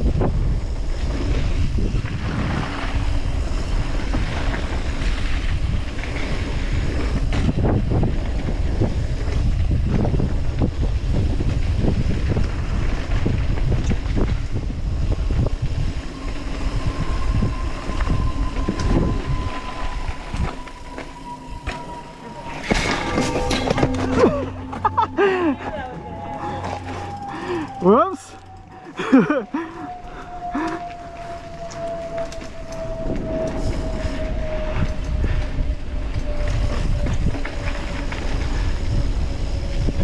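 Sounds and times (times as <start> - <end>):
bike tyres rumbling on dirt: 0.0 - 25.1, 26.0 - 40.0
wind buffeting microphone: 0.0 - 40.0
thin steady whine: 11.8 - 39.6.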